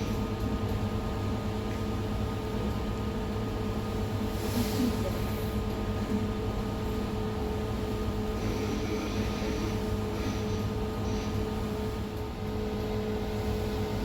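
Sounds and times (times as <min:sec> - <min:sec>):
ferry engines droning: 0:06.8 - 0:14.0.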